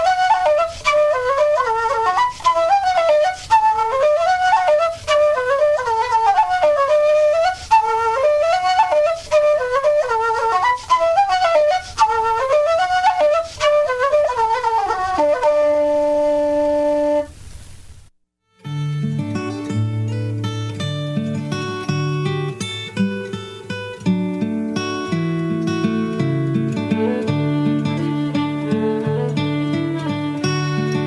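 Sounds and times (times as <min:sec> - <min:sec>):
flute playing fast folk tune: 0:00.0 - 0:17.3, 0:26.7 - 0:31.0.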